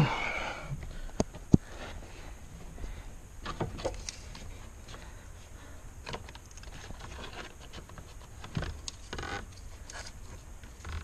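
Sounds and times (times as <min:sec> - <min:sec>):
low steady background hum: 0:00.0 - 0:11.0.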